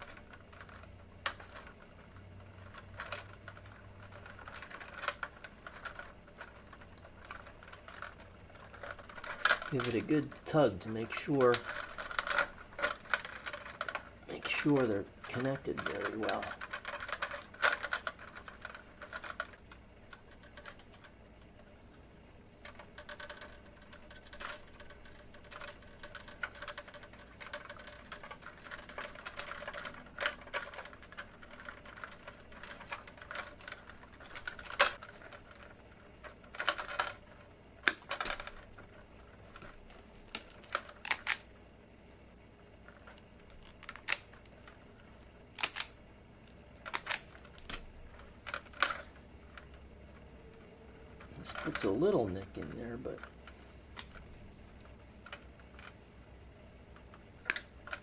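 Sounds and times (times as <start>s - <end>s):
wire connectors clicking: 0.0s - 21.7s, 22.6s - 41.5s, 42.9s - 44.8s, 45.5s - 50.2s, 51.0s - 56.0s, 57.0s - 58.0s.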